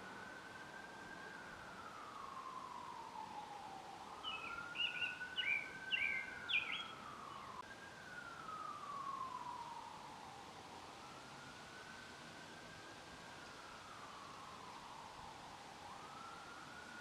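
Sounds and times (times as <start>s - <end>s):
emergency siren wailing: 0.0s - 17.0s
small bird chirping: 4.2s - 7.6s.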